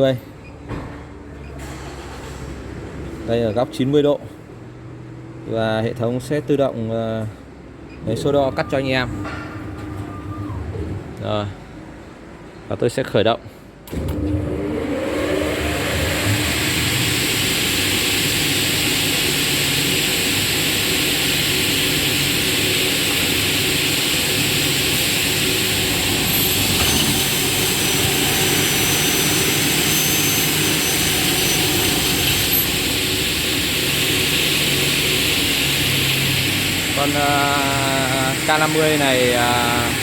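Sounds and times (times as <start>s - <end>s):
cutting saw whine: 14.1s - 40.0s.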